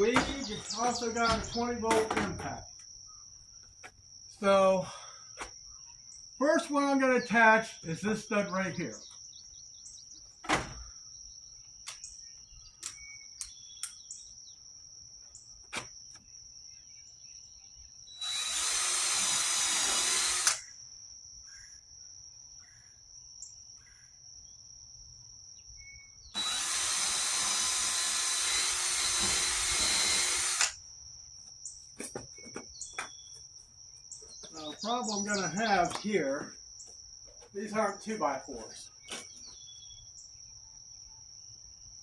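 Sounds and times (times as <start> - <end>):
cordless drill boring into wood: 18.2 - 20.6, 26.4 - 30.8.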